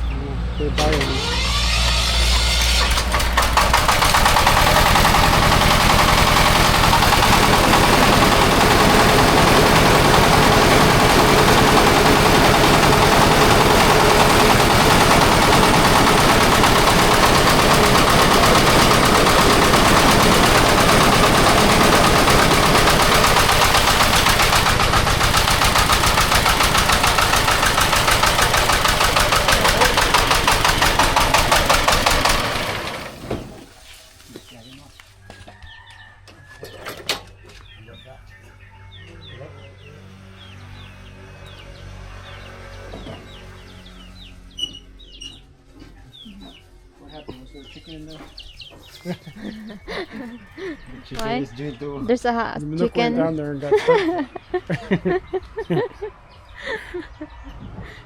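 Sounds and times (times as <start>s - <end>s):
engine running with clatter: 0.0s - 33.8s, 40.2s - 45.0s.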